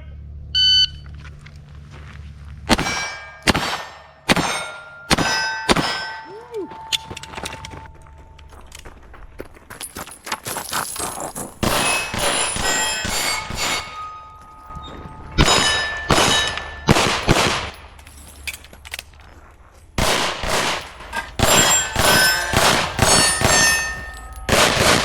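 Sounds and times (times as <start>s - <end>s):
pistol shots: 2.7s - 6.3s, 11.6s - 14.1s, 15.4s - 18.0s, 20.0s - 25.0s
steel target plate clanging: 2.7s - 7.9s, 11.6s - 18.8s, 20.4s - 25.0s.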